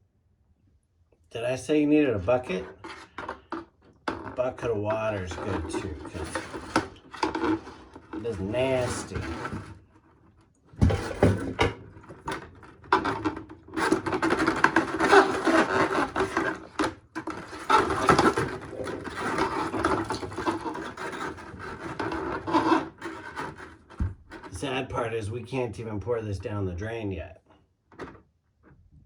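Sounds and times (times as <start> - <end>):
scraping on sink drain parts: 2.2 - 24.8.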